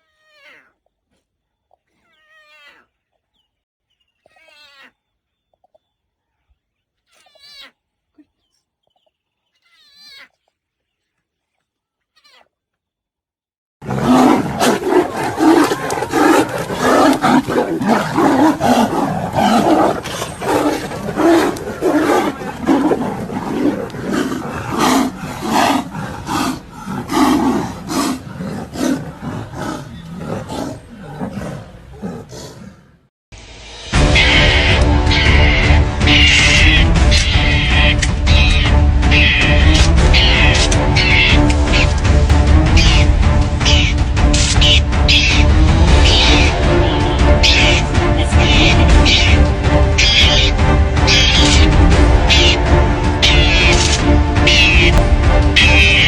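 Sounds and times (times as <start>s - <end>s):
faint high calls: 0.0s - 2.9s, 3.9s - 6.0s, 7.1s - 10.4s, 12.2s - 12.5s, 34.0s - 42.0s, 42.7s - 55.0s, 55.6s - 56.0s
big cats roaring and snarling: 7.1s - 8.6s, 13.8s - 33.1s, 34.0s - 56.0s.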